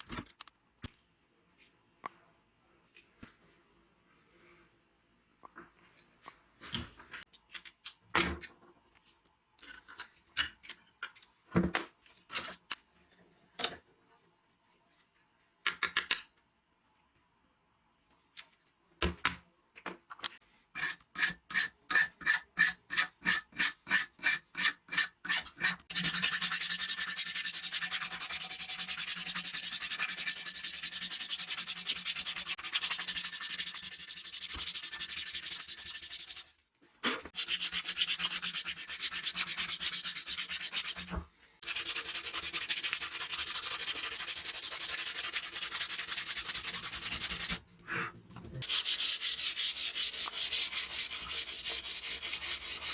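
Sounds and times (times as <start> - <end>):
sanding strokes: 20.8 - 36.5, 37.4 - 47.6, 48.6 - 52.9.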